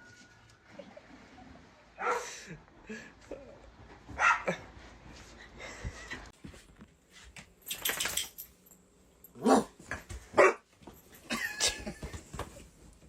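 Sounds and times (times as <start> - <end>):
dog barking: 2.0 - 2.3, 4.2 - 4.6, 9.4 - 9.7, 10.3 - 10.6.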